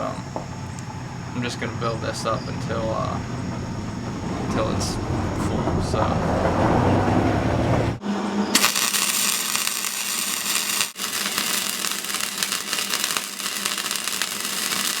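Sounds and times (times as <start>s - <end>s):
welding arc crackling: 8.6s - 15.0s.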